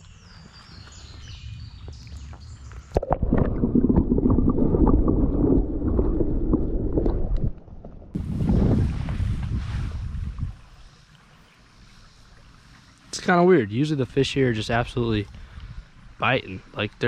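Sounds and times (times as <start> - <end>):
underwater gurgling creek water: 1.9 - 9.5.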